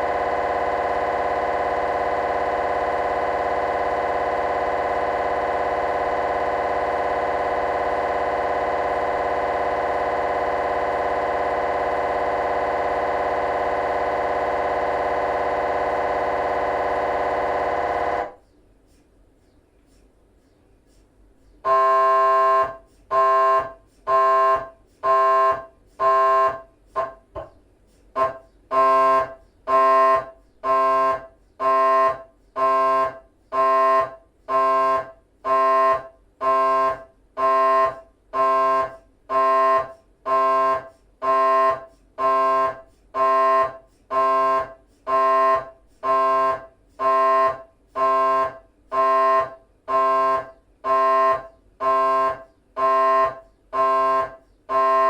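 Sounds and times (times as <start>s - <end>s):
mri scanner pulsing buzz: 0.0s - 18.4s.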